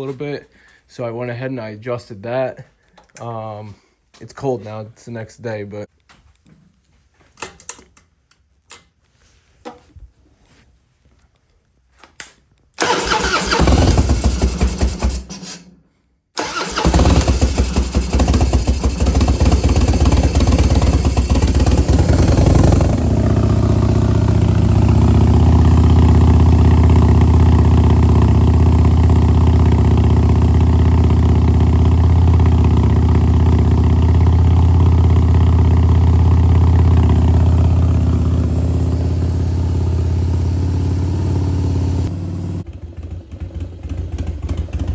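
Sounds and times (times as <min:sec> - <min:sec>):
motorcycle engine cranking: 0:12.8 - 0:15.7, 0:16.4 - 0:44.9
motorcycle engine idling: 0:16.8 - 0:44.9.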